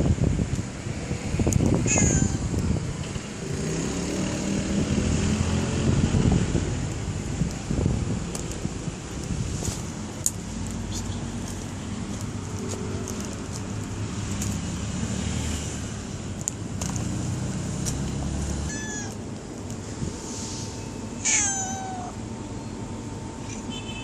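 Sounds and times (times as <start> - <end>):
cat meowing: 1.8 - 2.5, 18.6 - 19.2, 21.2 - 22.2.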